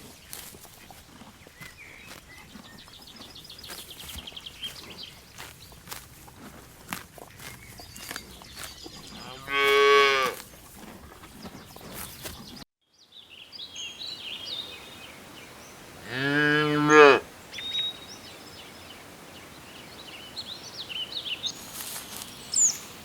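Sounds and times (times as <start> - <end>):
cattle mooing: 9.1 - 10.4, 16.0 - 17.3.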